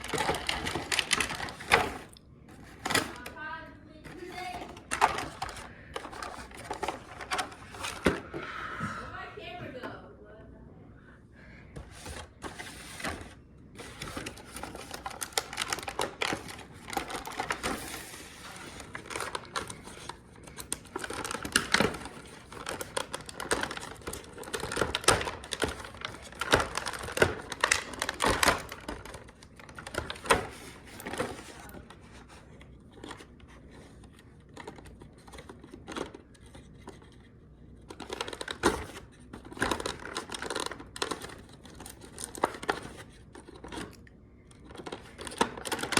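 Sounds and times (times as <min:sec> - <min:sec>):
plastic packaging crinkling: 0:00.0 - 0:08.3, 0:12.0 - 0:33.4, 0:34.4 - 0:44.0, 0:44.6 - 0:45.9.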